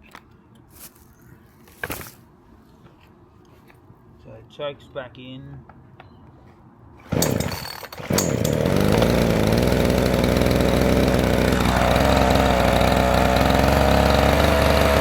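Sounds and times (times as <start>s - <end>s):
chainsaw starting and running: 7.0s - 15.0s.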